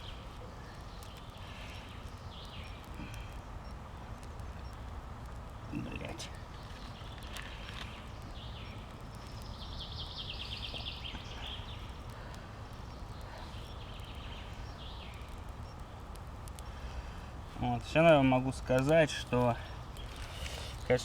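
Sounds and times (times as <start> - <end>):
faint bird calls: 0.0 - 4.9, 5.6 - 17.2
forest background ambience: 0.0 - 21.0.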